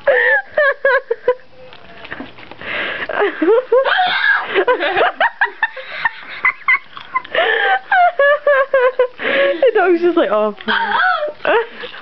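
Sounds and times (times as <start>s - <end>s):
person squealing and laughing: 3.7s - 5.0s, 10.7s - 11.8s.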